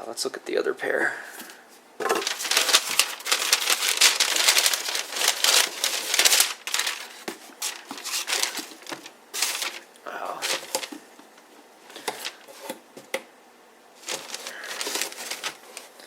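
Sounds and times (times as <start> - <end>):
packing wrapping crinkling: 2.0 - 12.8, 14.0 - 16.0.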